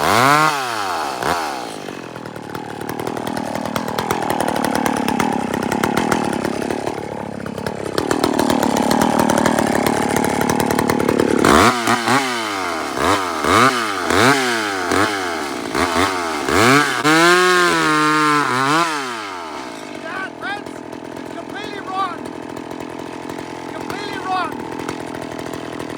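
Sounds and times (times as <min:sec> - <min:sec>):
chainsaw cutting wood: 0:00.0 - 0:25.9
chainsaw revving: 0:00.0 - 0:25.9.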